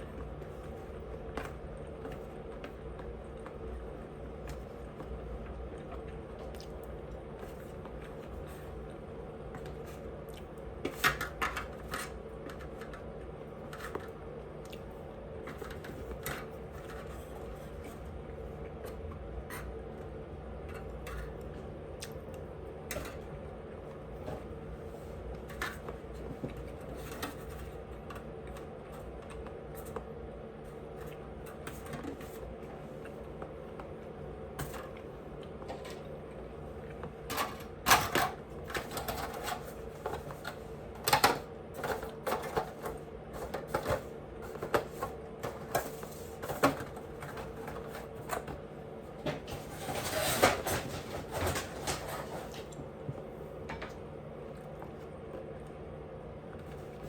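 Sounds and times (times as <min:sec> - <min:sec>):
steady background hum: 0:00.0 - 0:57.0.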